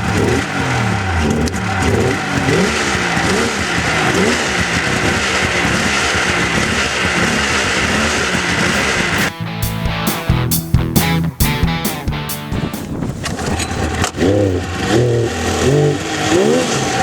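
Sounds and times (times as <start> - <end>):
snowmobile engine revving: 0.0 - 9.4, 13.5 - 17.0
music: 9.2 - 13.2.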